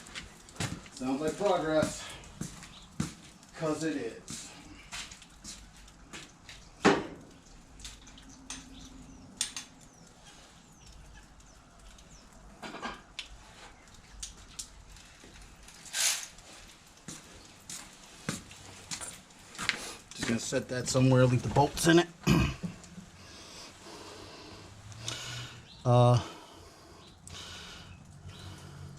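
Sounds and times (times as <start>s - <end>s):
hand tools and metal parts clinking: 15.2s - 17.8s.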